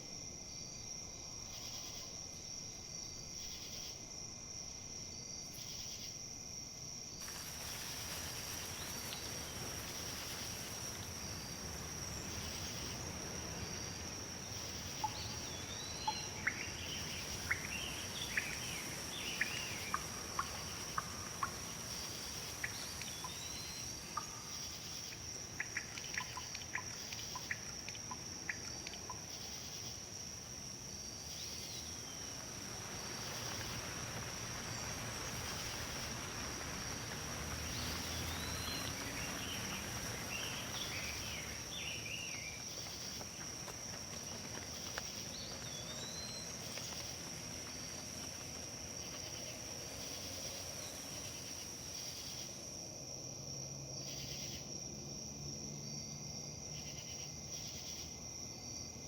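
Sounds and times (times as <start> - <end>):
wind rustling through leaves: 0.0 - 59.0
bird chirps: 15.0 - 23.9.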